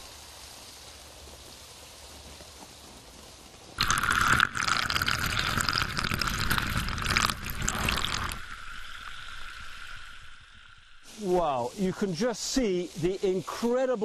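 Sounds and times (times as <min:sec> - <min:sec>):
water gushing from borehole: 0:03.8 - 0:11.7.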